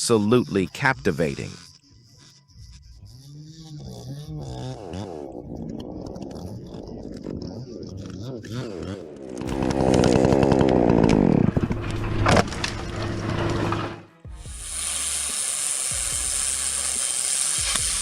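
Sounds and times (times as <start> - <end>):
chainsaw running: 8.5 - 18.0
steady hiss: 14.5 - 18.0.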